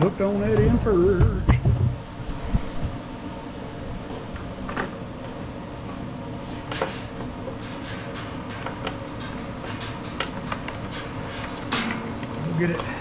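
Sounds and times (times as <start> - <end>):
low background hum: 0.0 - 13.0
metal parts clicking and scraping: 7.6 - 12.4.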